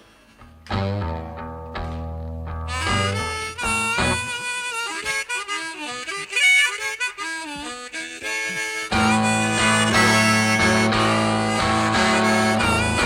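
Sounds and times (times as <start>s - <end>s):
heavy bass line: 0.7s - 4.3s, 8.9s - 13.0s
blues harmonica: 0.7s - 13.0s.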